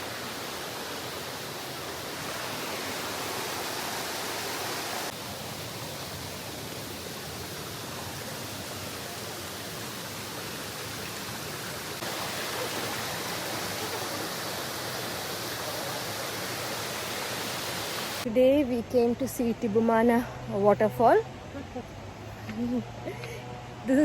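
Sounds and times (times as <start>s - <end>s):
waterfall roaring: 0.0s - 18.3s.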